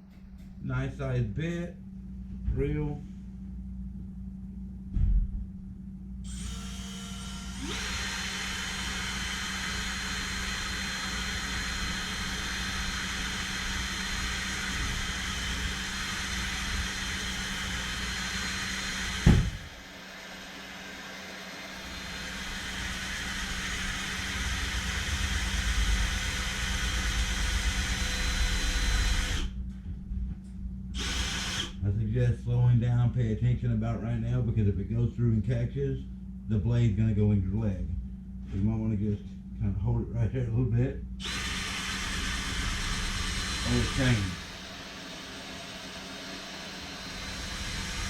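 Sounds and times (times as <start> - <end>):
electric drill boring steel: 6.3 - 29.6, 31.0 - 31.8, 41.2 - 48.0
sharp knock: 19.2 - 19.6.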